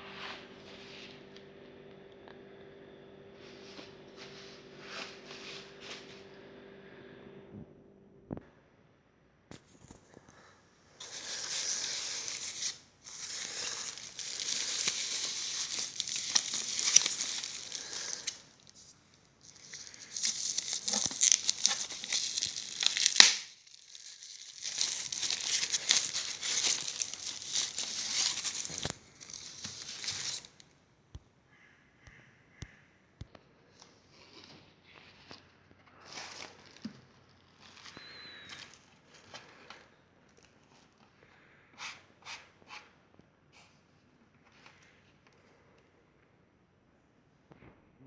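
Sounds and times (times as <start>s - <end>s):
packaging crinkling and tearing: 11.0s - 30.6s, 36.0s - 40.8s.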